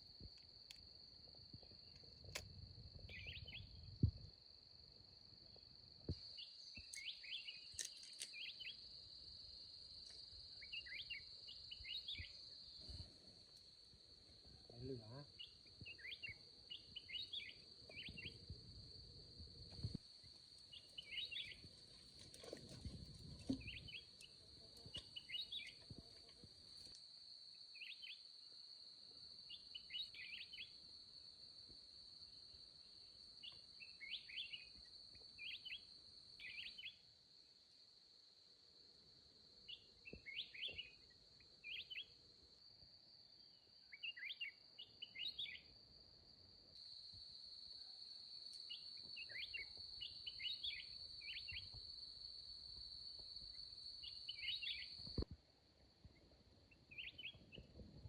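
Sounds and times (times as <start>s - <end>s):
bird chirping: 3.1s - 3.8s, 6.2s - 8.8s, 10.6s - 13.0s, 15.3s - 18.4s, 20.7s - 21.7s, 23.5s - 25.8s, 29.5s - 30.7s, 39.7s - 42.1s, 43.9s - 45.7s, 48.7s - 51.8s, 54.0s - 55.0s, 56.7s - 57.7s.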